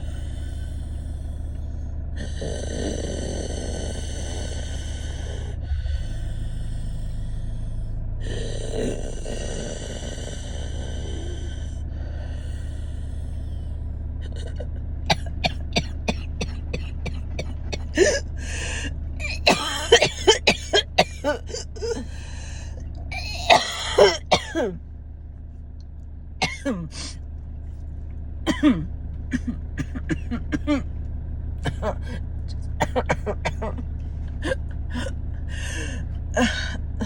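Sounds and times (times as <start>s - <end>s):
wheezy breaths: 0.0s - 14.6s, 16.2s - 22.9s, 34.4s - 37.0s
woman coughing: 14.3s - 18.4s, 19.2s - 22.1s, 23.1s - 24.8s, 26.4s - 27.2s, 28.5s - 30.9s, 31.7s - 32.2s, 32.8s - 33.8s.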